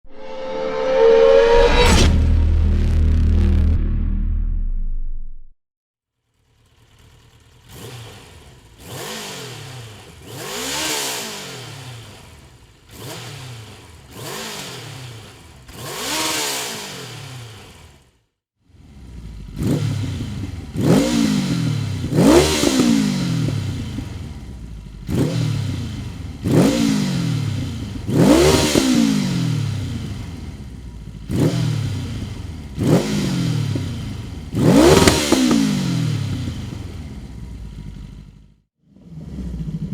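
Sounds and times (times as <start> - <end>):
motorcycle engine revving: 6.3 - 39.9.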